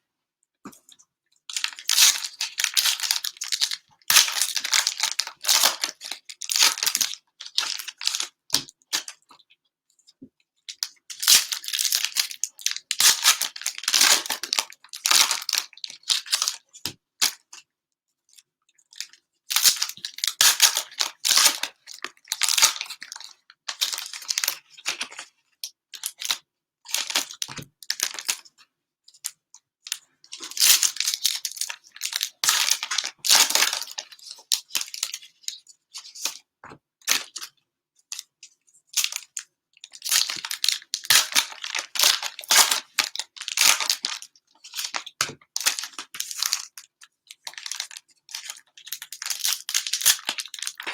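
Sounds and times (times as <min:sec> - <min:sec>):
cellophane crinkling and ripping: 0:01.5 - 0:09.2, 0:10.8 - 0:16.6, 0:19.0 - 0:25.3, 0:25.9 - 0:28.4, 0:30.3 - 0:36.4, 0:39.0 - 0:50.9.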